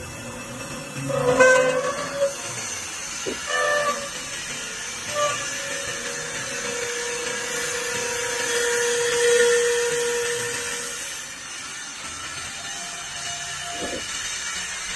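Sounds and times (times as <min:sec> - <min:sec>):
wood lathe whining: 0:00.0 - 0:11.3.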